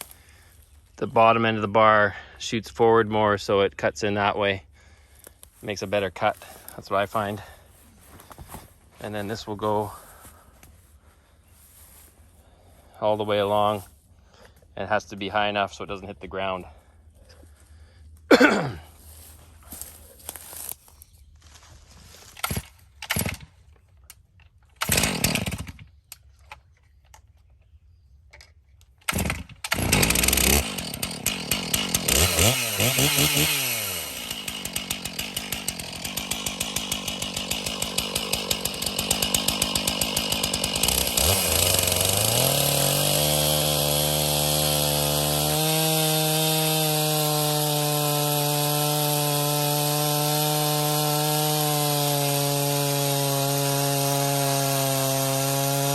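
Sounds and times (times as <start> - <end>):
chainsaw starting and revving: 4.9 - 10.3, 22.4 - 23.5, 24.8 - 25.9, 29.0 - 55.9.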